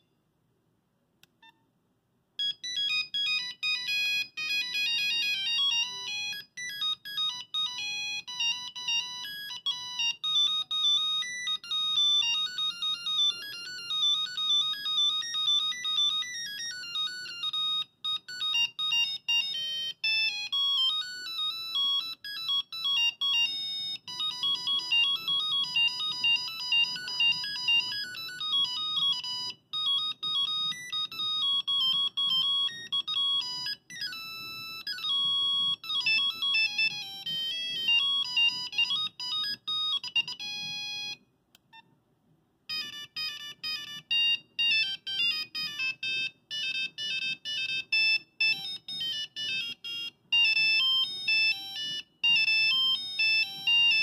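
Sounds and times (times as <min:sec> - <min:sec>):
monophonic ringtone beeping melodies: 0:02.4 - 0:41.8, 0:42.7 - 0:54.0.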